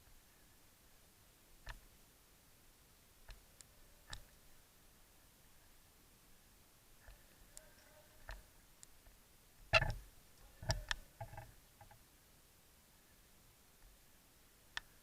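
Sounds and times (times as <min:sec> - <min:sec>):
sharp clicks and snaps: 0:01.6 - 0:01.8, 0:03.2 - 0:04.4, 0:07.0 - 0:10.0, 0:10.6 - 0:12.0.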